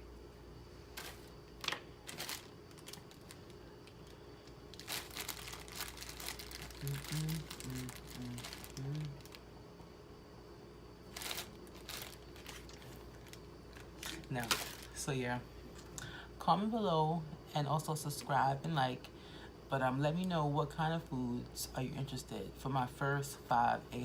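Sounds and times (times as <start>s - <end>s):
packaging crinkling and rustling: 0.9s - 9.4s, 11.1s - 15.0s.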